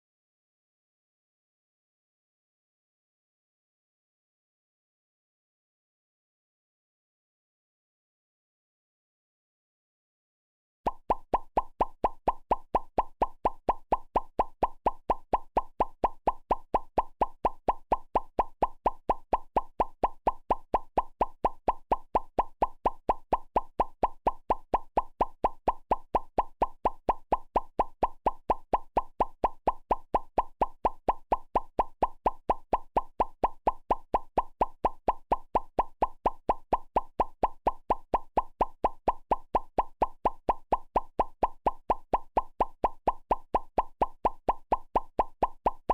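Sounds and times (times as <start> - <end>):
cartoon pops: 10.9 - 45.9.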